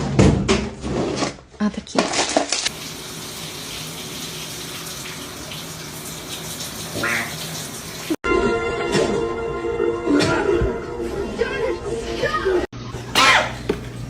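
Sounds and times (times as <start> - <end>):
water running: 2.3 - 8.2, 12.9 - 14.0.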